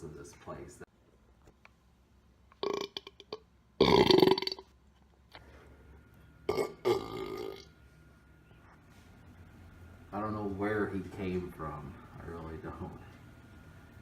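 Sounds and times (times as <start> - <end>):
man belching loudly: 2.6 - 4.7, 6.5 - 7.7.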